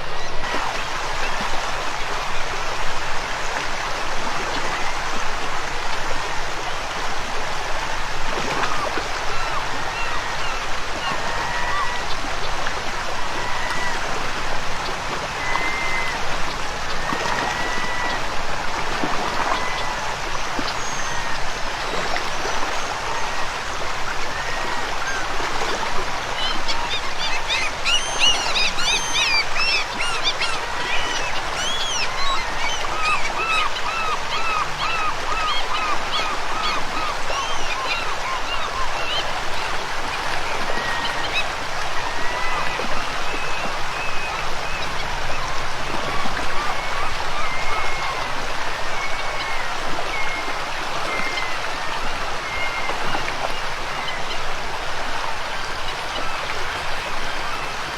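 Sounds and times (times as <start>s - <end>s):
river water rushing: 0.0s - 57.9s
birds calling: 26.2s - 52.8s.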